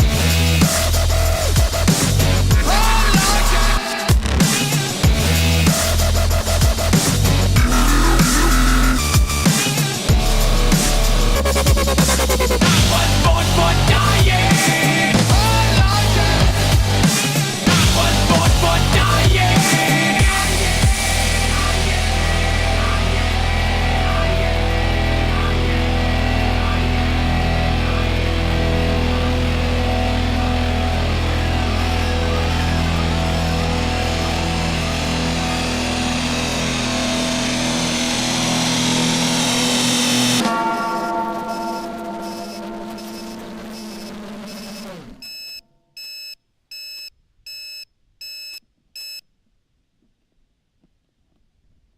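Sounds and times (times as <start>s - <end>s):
instrumental rock music: 0.0s - 45.2s
electronic beeper beeps: 7.6s - 9.6s
ringing chord: 19.0s - 45.2s.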